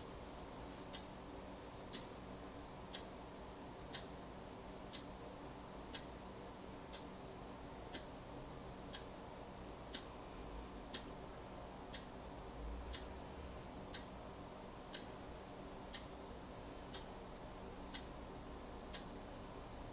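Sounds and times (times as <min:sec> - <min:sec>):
faint low hum: 0:00.0 - 0:19.9
faint regular ticking: 0:00.7 - 0:01.2, 0:01.8 - 0:04.2, 0:04.8 - 0:05.2, 0:05.8 - 0:07.2, 0:07.8 - 0:08.2, 0:08.8 - 0:09.2, 0:09.8 - 0:19.9.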